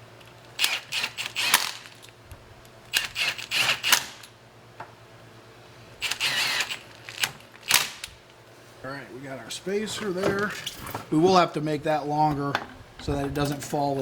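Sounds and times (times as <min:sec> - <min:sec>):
low machine hum: 0:04.2 - 0:14.0.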